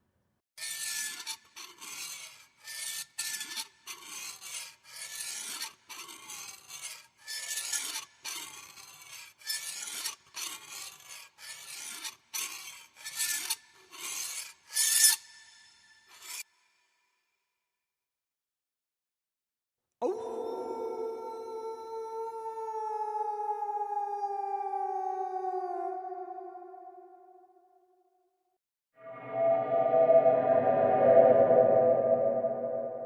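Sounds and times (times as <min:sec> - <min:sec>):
rasping scraping strokes: 0:00.6 - 0:15.3.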